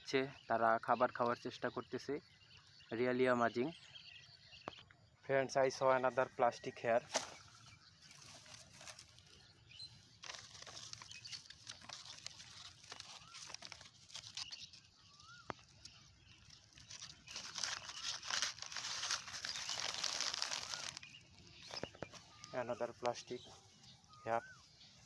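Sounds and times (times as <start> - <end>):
faint bird chirps: 0.0 - 25.0
plastic litter crinkling: 10.1 - 15.4, 16.4 - 22.5.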